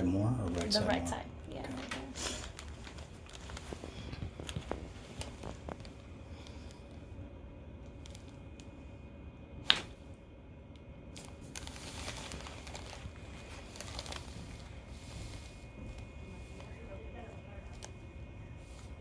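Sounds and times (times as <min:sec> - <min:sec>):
rustling on treatment table: 0:01.7 - 0:06.8, 0:11.2 - 0:19.0.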